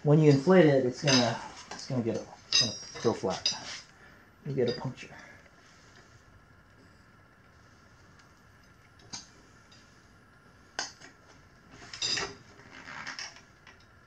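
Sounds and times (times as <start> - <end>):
metal tools clinking on wheel rim: 0.2 - 3.8, 4.5 - 5.0, 11.8 - 13.4.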